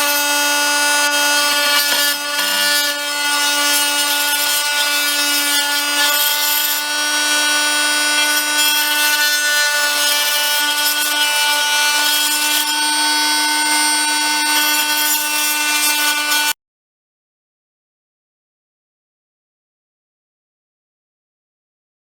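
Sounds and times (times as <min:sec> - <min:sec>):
blade sawing through plastic: 0:00.0 - 0:16.6
oscillating multi-tool humming: 0:00.0 - 0:16.6.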